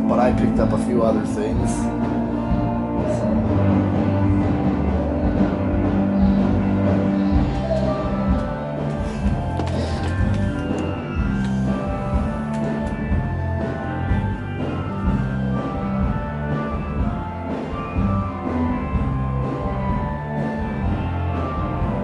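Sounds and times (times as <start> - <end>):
rock music with guitar and drums: 0.0 - 22.0.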